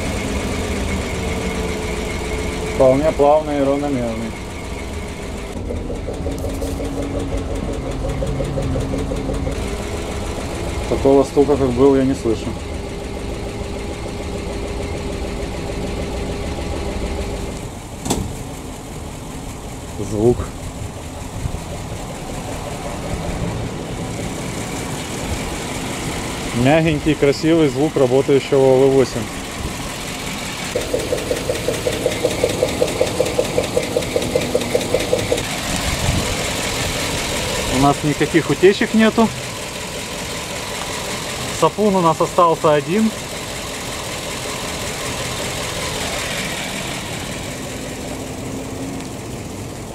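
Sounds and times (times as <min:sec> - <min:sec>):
bus engine idling: 0:00.0 - 0:49.9
light rhythmic ticking: 0:30.7 - 0:35.4.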